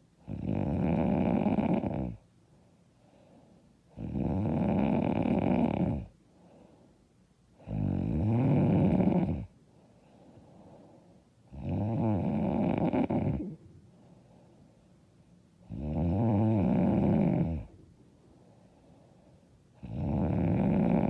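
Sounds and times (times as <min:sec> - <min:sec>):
quiet breathing: 0:00.0 - 0:21.0
woman snoring loudly: 0:00.2 - 0:02.2, 0:04.0 - 0:06.1, 0:07.6 - 0:09.5, 0:11.5 - 0:13.6, 0:15.7 - 0:17.7, 0:19.8 - 0:21.0.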